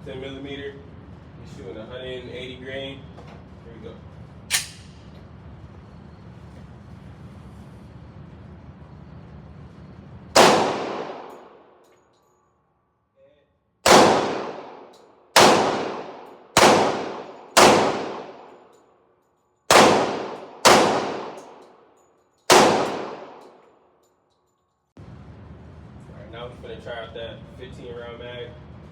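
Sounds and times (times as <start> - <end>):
pistol shots echoing: 4.5 - 5.0, 10.4 - 11.6, 13.8 - 18.6, 19.7 - 21.6, 22.5 - 23.6.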